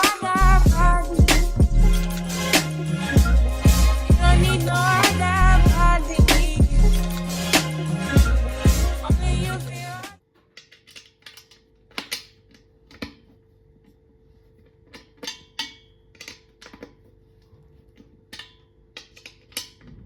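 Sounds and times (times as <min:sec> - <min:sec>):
hard objects clicking and knocking: 0:10.2 - 0:13.4, 0:14.6 - 0:17.2, 0:17.9 - 0:20.0.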